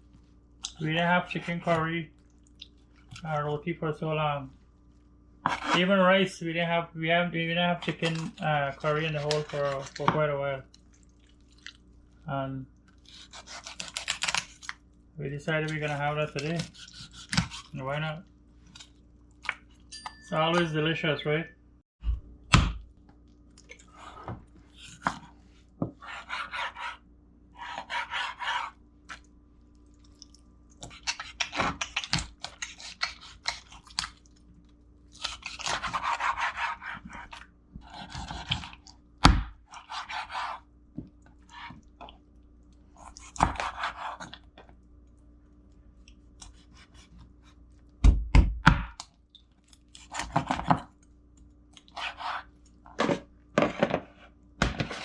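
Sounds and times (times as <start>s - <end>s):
knife slicing and scraping chicken: 1.3s - 1.9s, 5.4s - 6.0s, 7.8s - 10.2s, 13.0s - 14.7s, 15.5s - 18.1s, 23.9s - 27.0s, 27.6s - 28.8s, 30.8s - 34.1s, 35.2s - 38.8s, 39.7s - 40.7s, 43.0s - 44.4s, 46.4s - 47.6s, 51.8s - 53.2s
knife chopping on cutting board: 5.4s - 5.8s, 16.4s - 17.7s, 35.5s - 40.6s, 43.3s - 44.3s, 48.0s - 49.0s.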